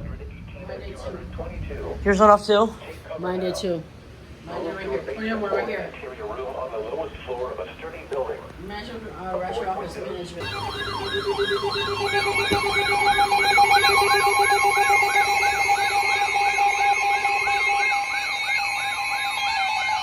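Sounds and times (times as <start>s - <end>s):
fast warbling alarm tone: 10.4s - 20.0s
two-tone attention signal: 10.4s - 20.0s.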